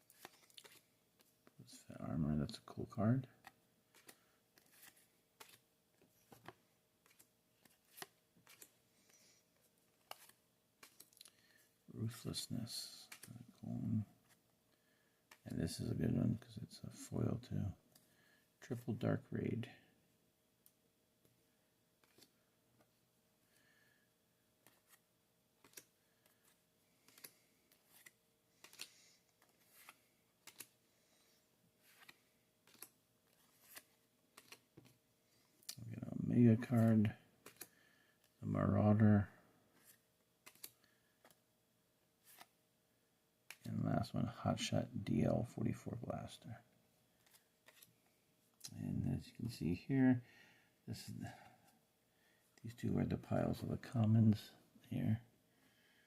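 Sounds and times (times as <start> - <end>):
cards clicking and flicking: 0.0 - 1.6, 3.4 - 9.3, 9.9 - 11.6, 12.9 - 13.4, 15.3 - 15.5, 22.0 - 22.4, 25.6 - 30.8, 31.8 - 35.0, 36.8 - 38.4, 39.8 - 41.4, 42.2 - 42.6, 43.4 - 43.7, 47.2 - 48.0
trading cards clicking and tapping: 3.4 - 5.6, 25.6 - 30.8, 31.9 - 35.0, 37.4 - 37.7.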